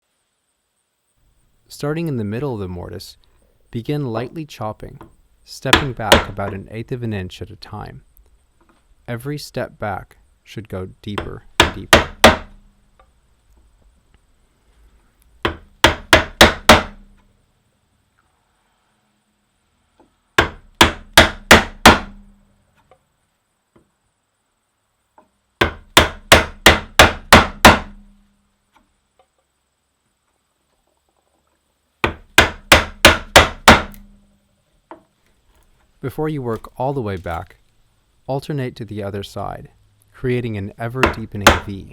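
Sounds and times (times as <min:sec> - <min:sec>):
mallet striking a chisel: 0:05.7 - 0:06.4, 0:11.2 - 0:12.6, 0:15.4 - 0:17.0, 0:20.4 - 0:22.2, 0:25.6 - 0:28.1, 0:32.0 - 0:34.1, 0:41.0 - 0:41.9.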